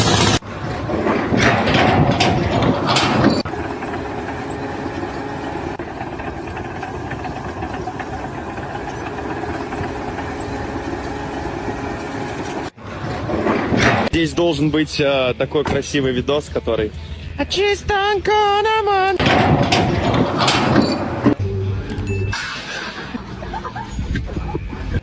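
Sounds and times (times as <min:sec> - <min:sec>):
engine running steadily: 0:00.0 - 0:14.1.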